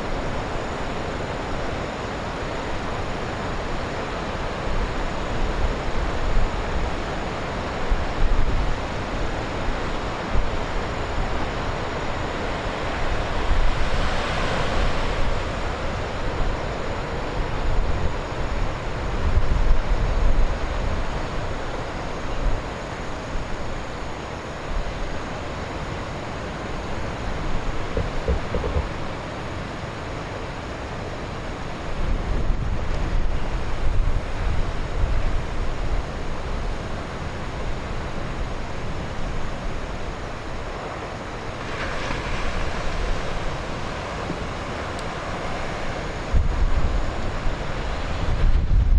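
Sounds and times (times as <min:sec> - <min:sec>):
heavy surf breaking: 0:00.0 - 0:48.9
wind buffeting microphone: 0:07.7 - 0:23.9, 0:26.1 - 0:29.4, 0:31.9 - 0:48.9.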